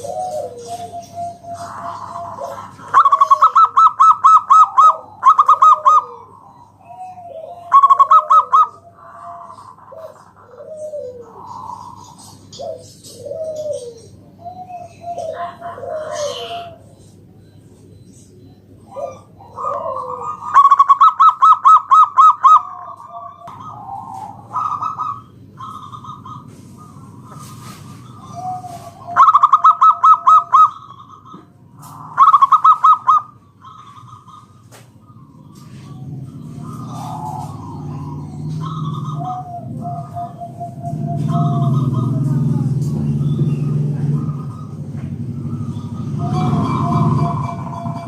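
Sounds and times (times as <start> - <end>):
dove stuttering coos: 0.0 - 48.0.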